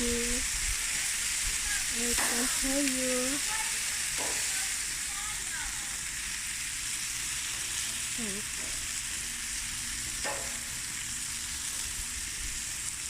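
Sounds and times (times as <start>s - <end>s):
food sizzling on a grill: 0.0s - 13.0s.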